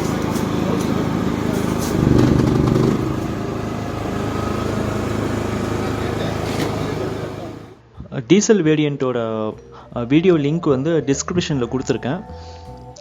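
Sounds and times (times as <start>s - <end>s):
generator engine running: 0.0s - 7.8s.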